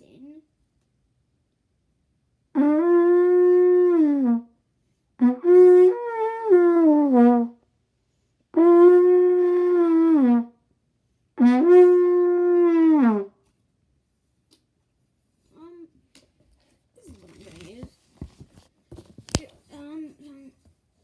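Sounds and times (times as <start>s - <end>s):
trumpet long held notes: 2.5s - 4.5s, 5.2s - 7.6s, 8.6s - 10.6s, 11.4s - 13.3s.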